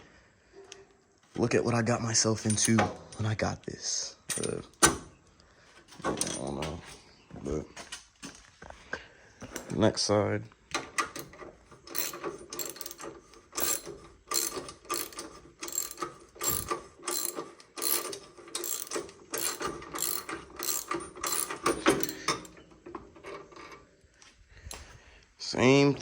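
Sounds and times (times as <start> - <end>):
socket ratchet clicking: 11.9 - 13.0, 13.6 - 22.5.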